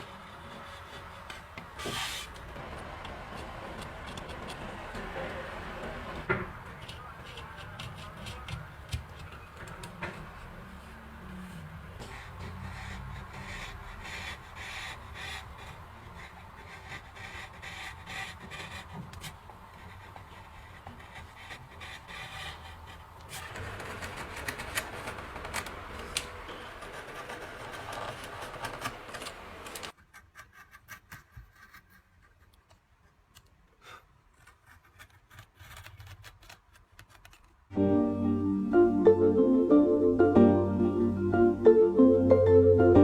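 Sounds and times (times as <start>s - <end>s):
knife carving wood: 0.0s - 5.6s, 6.2s - 37.7s
loud piano music: 37.8s - 43.0s.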